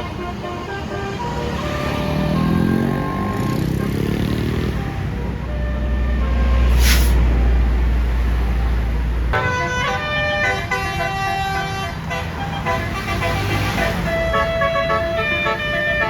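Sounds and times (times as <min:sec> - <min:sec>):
bus multi-tone air horn melody: 0:00.0 - 0:07.3, 0:09.4 - 0:16.0
brief hiss: 0:06.7 - 0:07.3.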